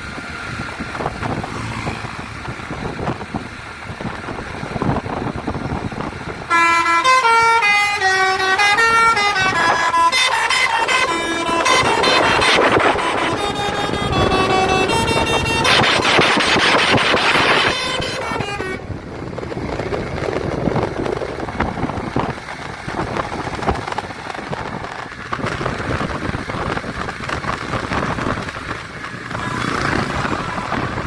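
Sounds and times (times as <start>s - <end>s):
vehicle and street noise: 0.0s - 31.0s
multi-tone air horn: 6.5s - 19.0s, 29.3s - 31.0s.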